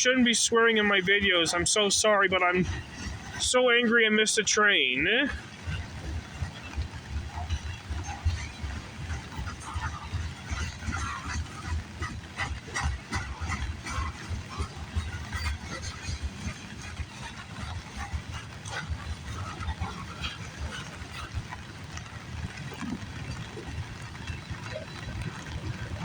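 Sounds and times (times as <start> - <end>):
freight cars rumbling: 0.0 - 26.0
wheels clattering on rail: 5.2 - 26.0.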